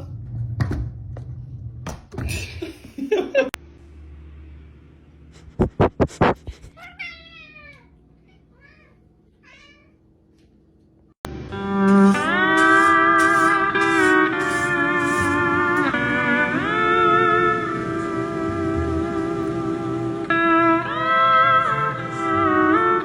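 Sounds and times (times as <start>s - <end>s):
cat meowing: 6.7s - 10.0s.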